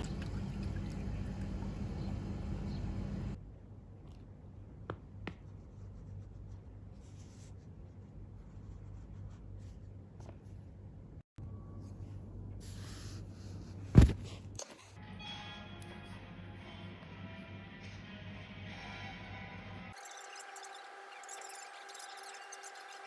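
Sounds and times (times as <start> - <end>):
steady low hum: 0.0 - 4.8.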